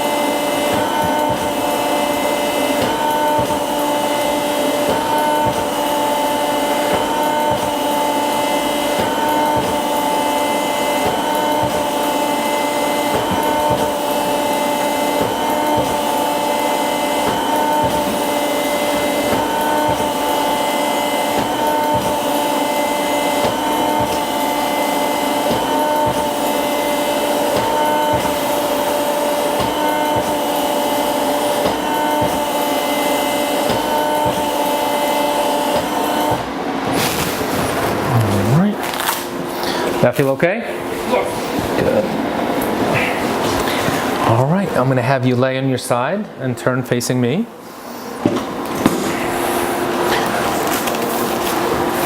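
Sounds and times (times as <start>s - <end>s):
motorised table whirring: 0.0s - 44.5s, 47.6s - 52.0s.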